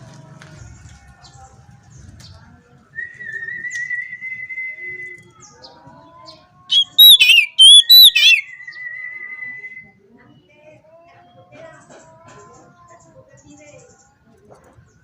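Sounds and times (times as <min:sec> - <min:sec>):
bird singing: 0:06.7 - 0:08.9.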